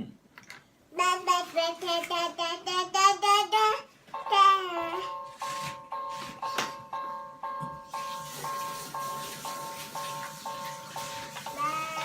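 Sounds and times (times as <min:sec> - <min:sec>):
toy railway crossing bell ringing: 0:04.2 - 0:12.0.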